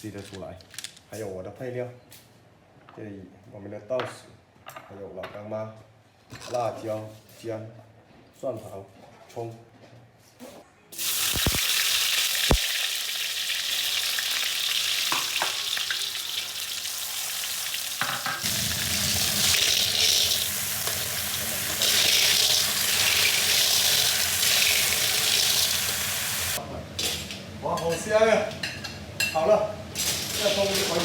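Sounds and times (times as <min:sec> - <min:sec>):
food sizzling in hot oil: 0:11.0 - 0:27.2, 0:30.0 - 0:31.0.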